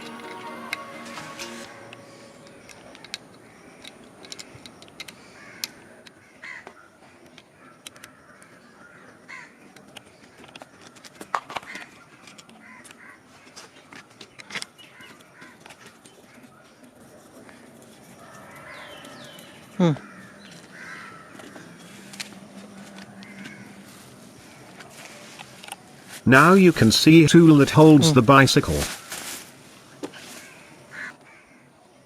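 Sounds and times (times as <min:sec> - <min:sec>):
crows cawing: 0:05.2 - 0:06.7, 0:20.0 - 0:21.8.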